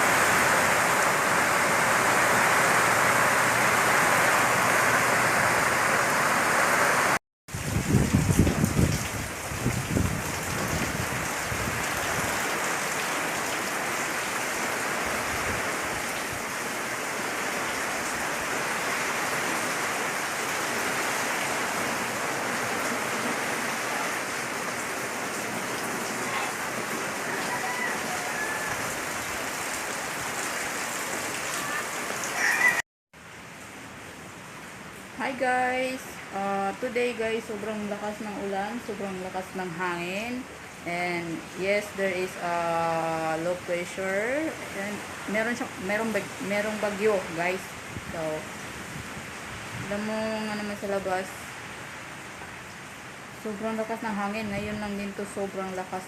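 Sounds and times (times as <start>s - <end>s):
low rumbling gusts: 0.0s - 12.4s
heavy rain pouring: 0.0s - 56.0s.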